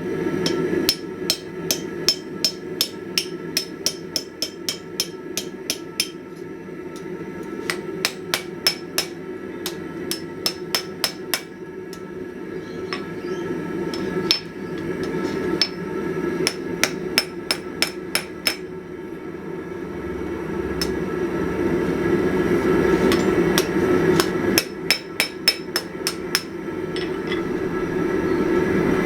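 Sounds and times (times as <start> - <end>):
hammer striking steel: 0.4 - 6.3, 7.0 - 12.0, 13.9 - 18.7, 23.1 - 27.6
steady low rush: 27.0 - 29.0.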